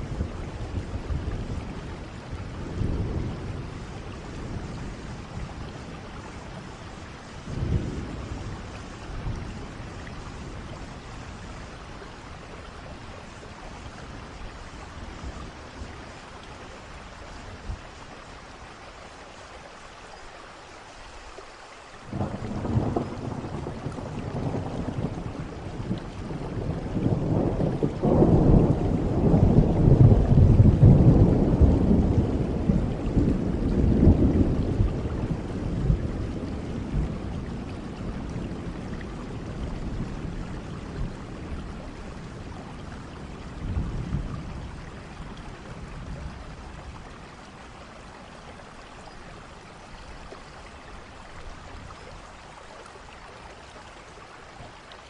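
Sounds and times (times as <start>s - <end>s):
rolling thunder: 0.0s - 11.8s, 22.1s - 47.0s
steady rain: 0.0s - 55.0s.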